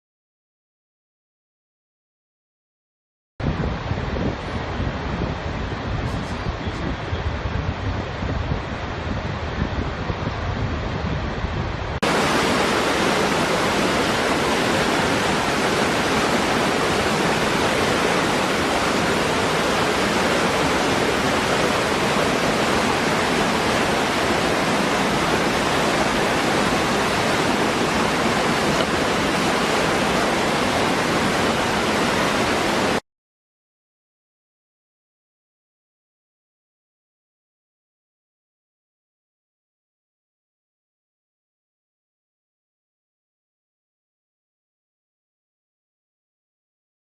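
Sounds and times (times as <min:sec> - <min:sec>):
waterfall rushing: 0:12.0 - 0:33.0.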